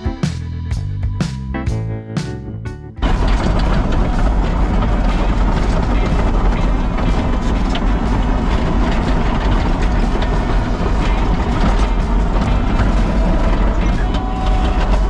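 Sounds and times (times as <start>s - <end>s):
heavy diesel engine rumble: 3.0s - 15.0s
machine clanking: 3.0s - 15.0s.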